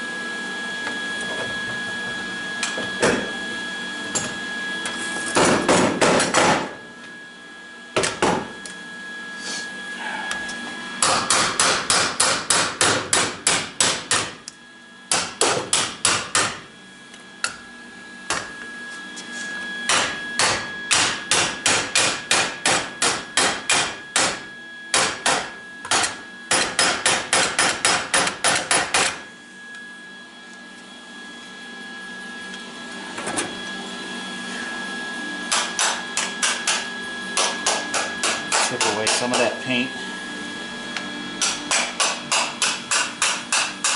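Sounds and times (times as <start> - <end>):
hammer pounding steel: 11.0 - 14.4, 19.9 - 24.4, 25.0 - 29.2, 41.4 - 43.9.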